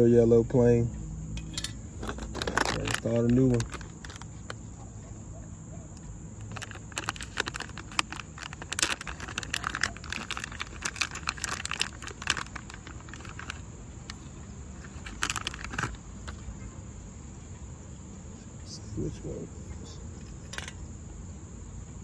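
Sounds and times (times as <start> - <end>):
insects chirping: 0.0 - 22.0
plastic parts clicking and rattling: 1.4 - 4.6, 6.4 - 16.5, 20.2 - 20.8.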